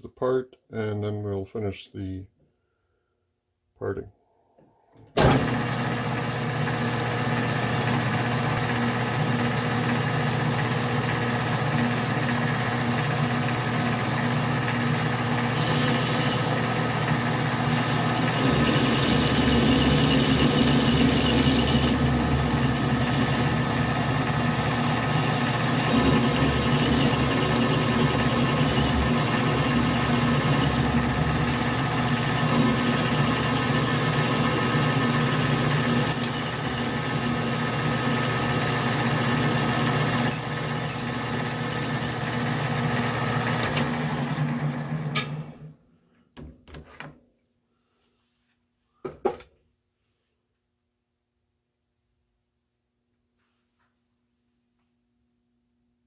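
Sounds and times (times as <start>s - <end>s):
metal lathe humming: 5.4s - 44.9s
parting tool cutting metal: 17.6s - 42.4s.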